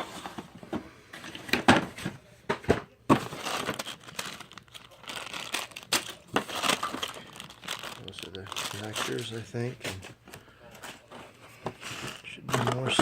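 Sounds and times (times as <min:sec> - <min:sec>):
packaging crinkling: 0:03.2 - 0:10.1.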